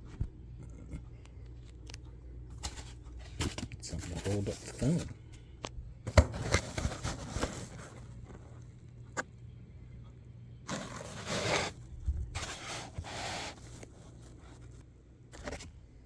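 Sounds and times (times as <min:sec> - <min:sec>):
rustling scrapes: 0:06.4 - 0:08.6, 0:10.7 - 0:14.8.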